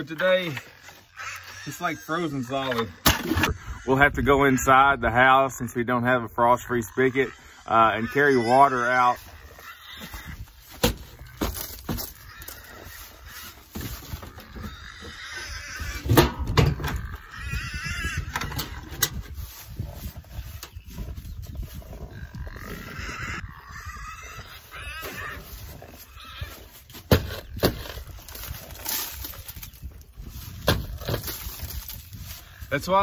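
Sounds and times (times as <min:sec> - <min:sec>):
animal wavering cry: 0:00.5 - 0:04.8, 0:06.5 - 0:10.6, 0:12.1 - 0:16.1, 0:16.9 - 0:18.9, 0:22.0 - 0:26.8.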